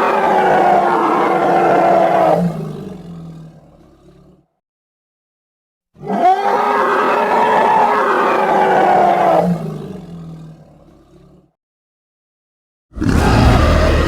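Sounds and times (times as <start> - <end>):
dinosaur roar: 0.0 - 4.5, 6.0 - 11.6, 12.9 - 14.0
low rumbling growl: 13.0 - 14.0.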